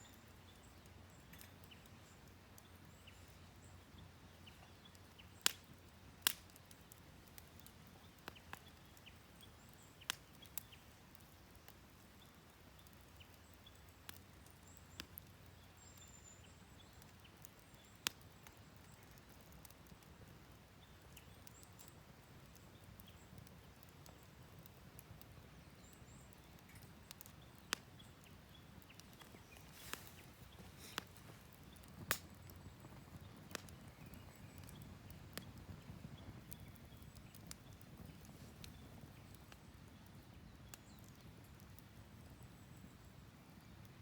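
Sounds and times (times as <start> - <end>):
wood fire crackling and popping: 0.1 - 44.0.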